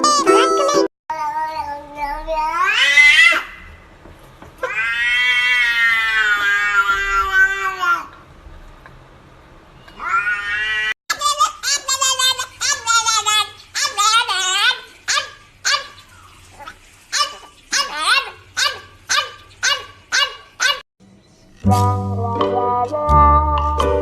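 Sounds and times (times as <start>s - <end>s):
cat meowing: 4.6s - 8.0s, 9.9s - 11.0s.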